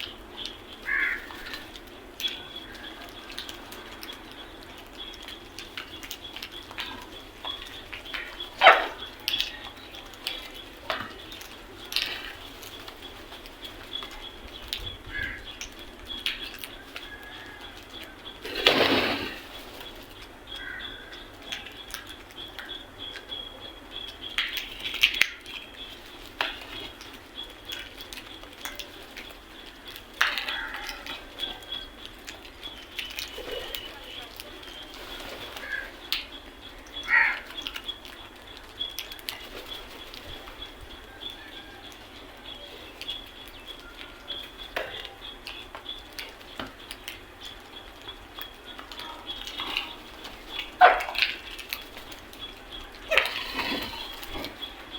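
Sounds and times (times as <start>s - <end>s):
birds chirping: 0.0s - 54.9s
harsh bird calls: 0.0s - 54.9s
crows cawing: 0.8s - 1.8s, 15.1s - 15.6s, 20.5s - 21.2s, 30.2s - 31.2s, 35.6s - 36.0s, 37.0s - 37.6s.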